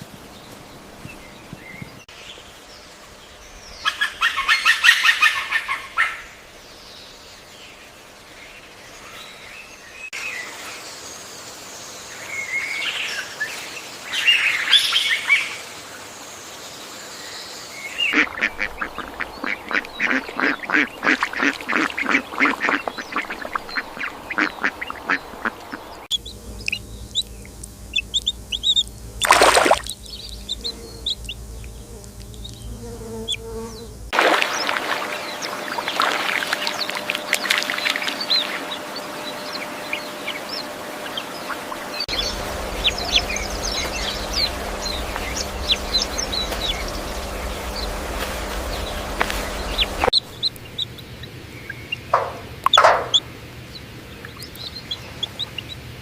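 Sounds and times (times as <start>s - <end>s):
ducks quacking: 18.0s - 27.3s, 34.2s - 53.3s.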